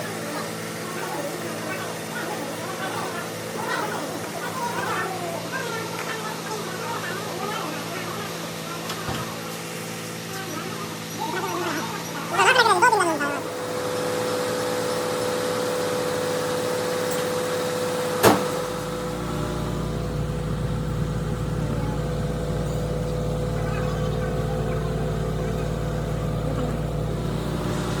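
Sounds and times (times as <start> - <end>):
car engine running: 0.0 - 28.0
mechanical hum: 0.0 - 28.0.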